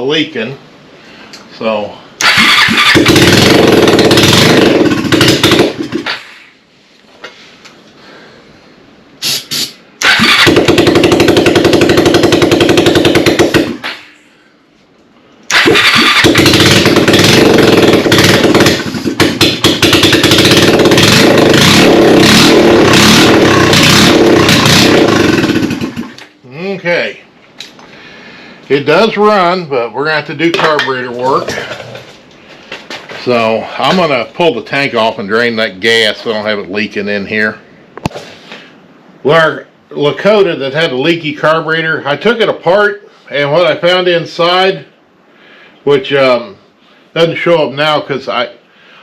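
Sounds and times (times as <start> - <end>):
atv engine running: 2.2 - 6.1, 10.0 - 13.9, 15.5 - 26.2.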